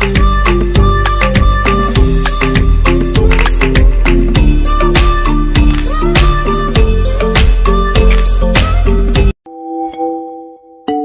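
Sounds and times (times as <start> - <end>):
instrumental music with heavy bass: 0.0 - 9.4.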